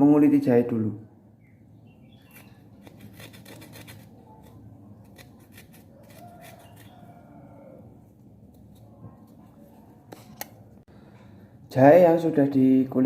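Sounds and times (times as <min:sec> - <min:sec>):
ginger root being peeled: 0:02.1 - 0:10.7.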